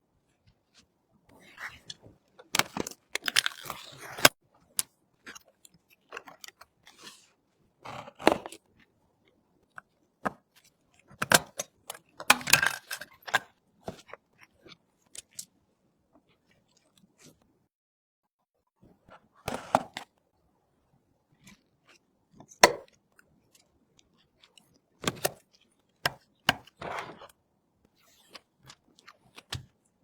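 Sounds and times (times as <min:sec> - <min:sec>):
hard parts clicking and clinking: 0:12.3 - 0:13.4.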